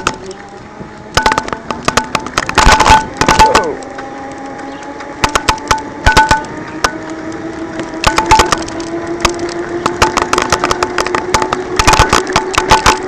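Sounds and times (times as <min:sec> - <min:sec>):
electric scooter motor whining: 0:00.0 - 0:13.0
scooter knocks and rattles: 0:01.2 - 0:03.6, 0:05.2 - 0:07.0, 0:08.0 - 0:13.0.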